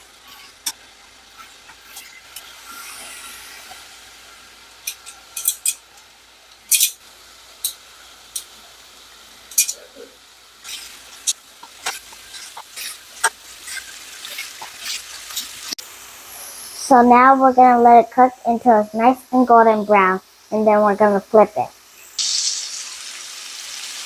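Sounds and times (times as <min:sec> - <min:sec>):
meat sizzling in oil: 0:00.0 - 0:16.9, 0:21.7 - 0:24.0
oil popping and crackling: 0:10.6 - 0:15.8.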